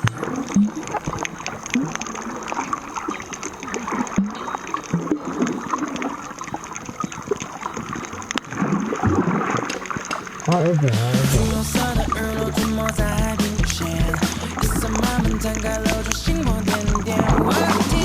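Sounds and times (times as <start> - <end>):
water sloshing and splashing: 0.0 - 18.0.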